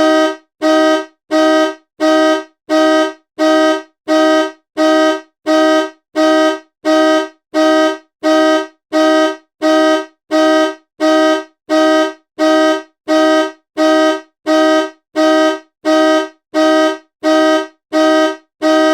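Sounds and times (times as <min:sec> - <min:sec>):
car horn honking: 0:00.0 - 0:18.9.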